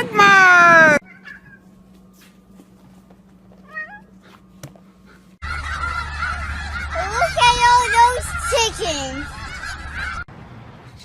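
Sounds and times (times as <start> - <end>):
chicken calls: 5.1 - 10.3.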